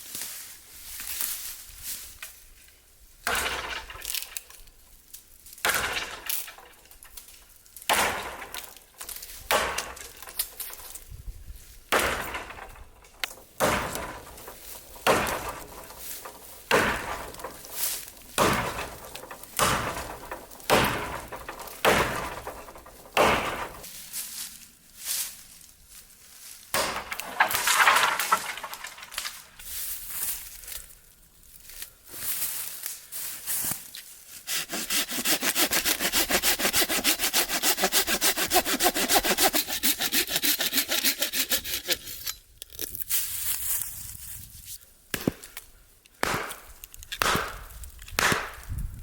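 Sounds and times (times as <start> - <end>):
sharp crunching impacts: 11.8 - 24.5, 26.5 - 31.0, 31.8 - 44.1, 45.1 - 49.0.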